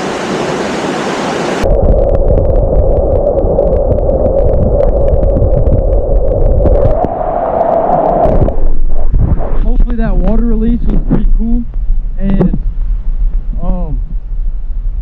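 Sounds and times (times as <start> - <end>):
underwater rushing and gurgling: 0.0 - 15.0
humming tone: 1.6 - 9.8.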